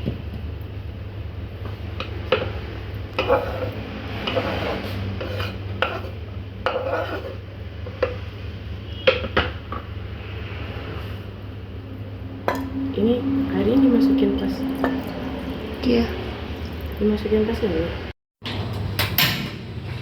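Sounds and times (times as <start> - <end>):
low hum: 11.2 - 18.1.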